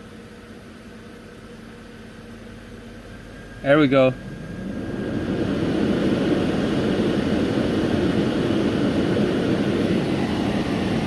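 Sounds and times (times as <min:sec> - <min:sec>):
car engine idling: 0:00.0 - 0:11.0
blower fan rushing air: 0:02.3 - 0:11.0.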